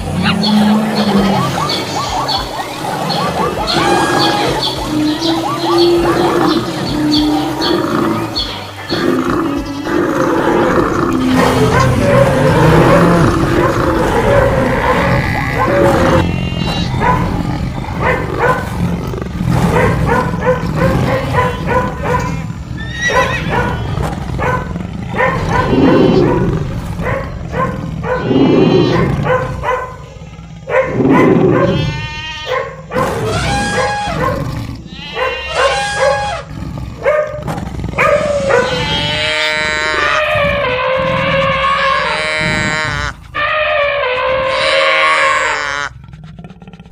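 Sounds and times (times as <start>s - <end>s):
cartoon animal calls: 0.0s - 18.9s, 19.7s - 26.8s, 27.5s - 36.5s, 38.0s - 46.0s
horse neighing and whinnying: 12.4s - 17.2s, 22.8s - 24.1s, 28.2s - 29.3s, 38.3s - 46.0s.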